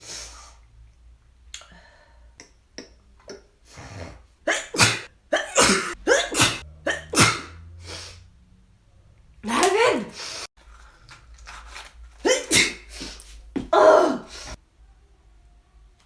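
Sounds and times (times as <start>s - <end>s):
person sneezing: 4.0s - 8.2s, 12.2s - 14.6s
person sniffing: 7.4s - 8.3s.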